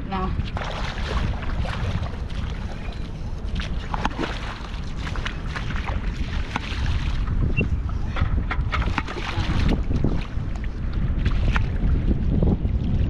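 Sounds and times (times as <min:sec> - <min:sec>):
wind rumbling on microphone: 0:00.0 - 0:13.0.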